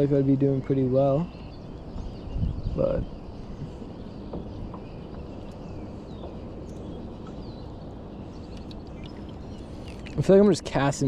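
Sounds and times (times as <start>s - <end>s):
faint bird chirps: 0.0s - 11.0s
wind rumble on microphone: 0.0s - 11.0s.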